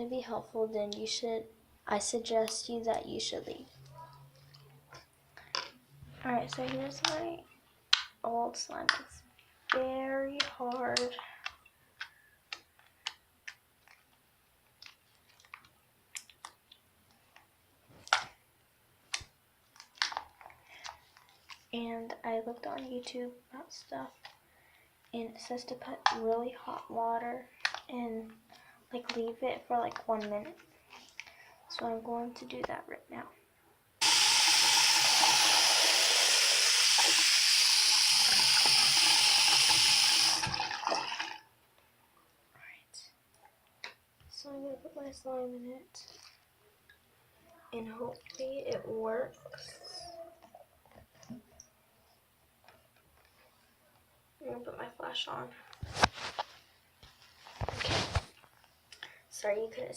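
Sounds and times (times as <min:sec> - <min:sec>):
tap water running into container: 0:34.0 - 0:41.4.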